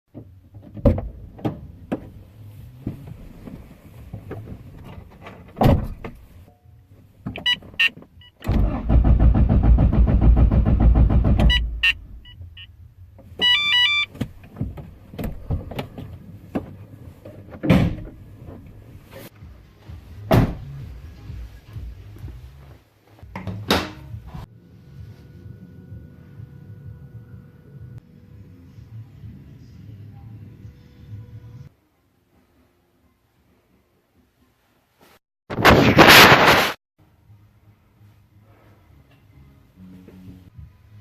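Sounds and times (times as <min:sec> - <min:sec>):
starter cranking engine: 0:08.5 - 0:11.4
short electronic beeps: 0:13.4 - 0:14.1.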